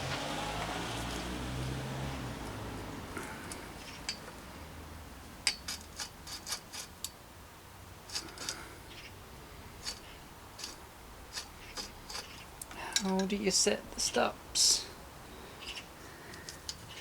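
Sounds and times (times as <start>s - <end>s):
metallic clicks of hand tools: 5.4s - 7.2s, 8.1s - 8.6s, 16.3s - 16.9s.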